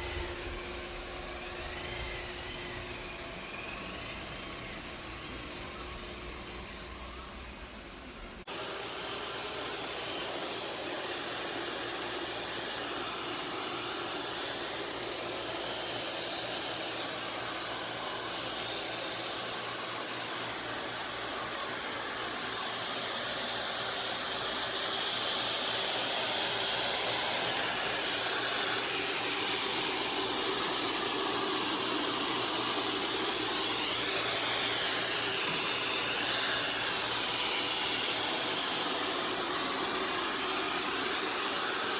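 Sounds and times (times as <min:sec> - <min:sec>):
robot vacuum suction motor: 0:00.0 - 0:41.9.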